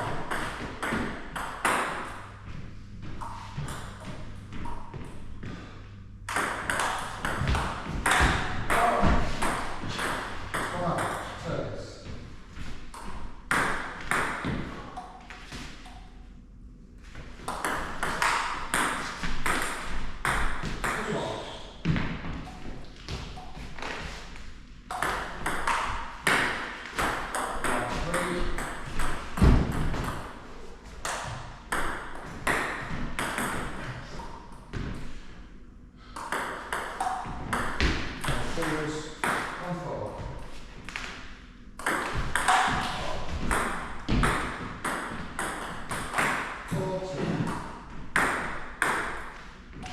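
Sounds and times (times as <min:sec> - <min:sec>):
table tennis ball hits: 0:00.0 - 0:02.2, 0:06.3 - 0:11.4, 0:12.9 - 0:16.1, 0:17.4 - 0:21.3, 0:24.9 - 0:30.4, 0:31.0 - 0:35.0, 0:36.1 - 0:39.6, 0:41.8 - 0:49.9.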